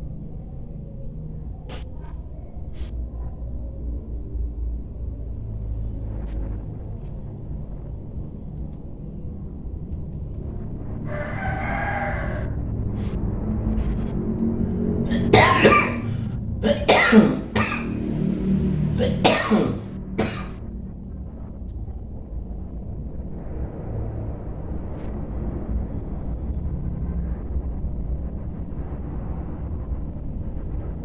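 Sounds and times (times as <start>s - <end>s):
rooster crowing: 11.0s - 12.7s
person coughing: 15.1s - 18.0s, 18.9s - 20.6s.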